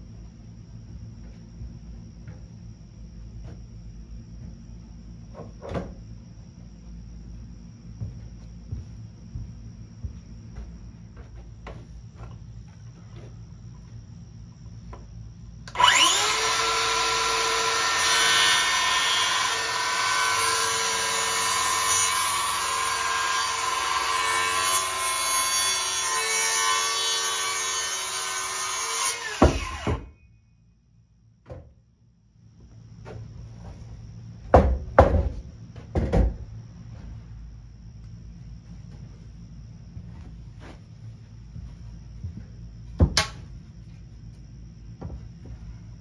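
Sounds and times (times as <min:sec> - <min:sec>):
electric saw cutting wood: 0:15.7 - 0:30.0.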